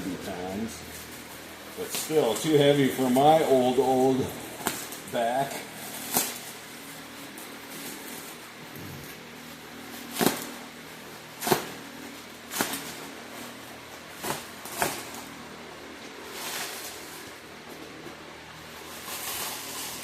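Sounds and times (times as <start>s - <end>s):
soft rustling scrape: 18.6s - 20.0s.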